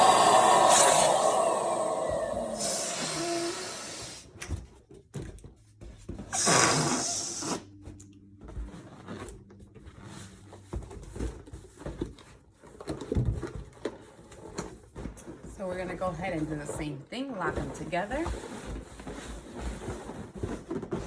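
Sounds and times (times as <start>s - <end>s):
electric balloon pump blowing: 0.0s - 4.5s, 6.3s - 7.7s
balloons being handled: 0.0s - 21.0s.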